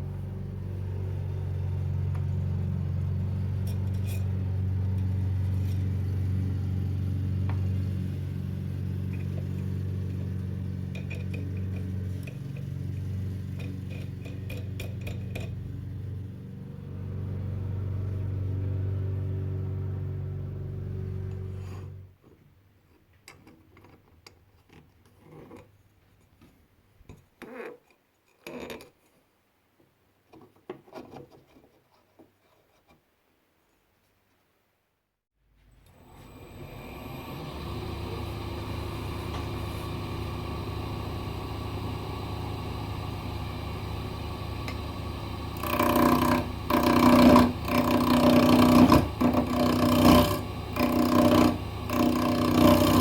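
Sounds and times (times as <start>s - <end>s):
lathe motor humming: 36.0s - 53.0s.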